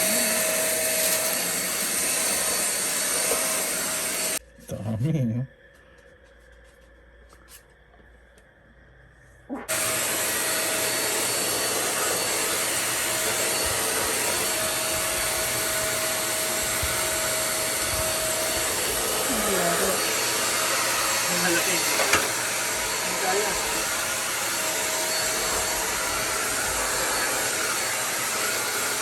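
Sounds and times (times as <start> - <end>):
vacuum cleaner motor running: 0.0 - 4.4, 9.7 - 29.0.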